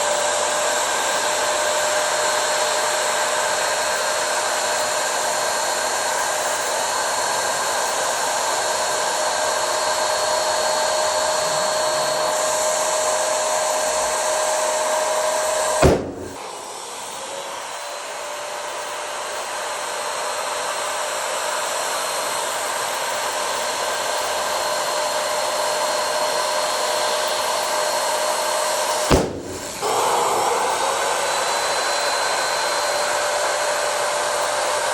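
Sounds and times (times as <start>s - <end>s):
electric air blower whirring: 0.0s - 34.9s
balloons bursting: 15.8s - 16.5s, 29.1s - 30.2s.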